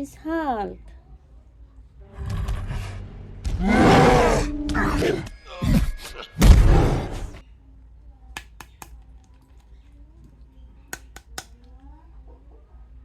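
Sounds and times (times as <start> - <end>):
plastic action figure clicks: 8.4 - 9.0, 10.9 - 11.6.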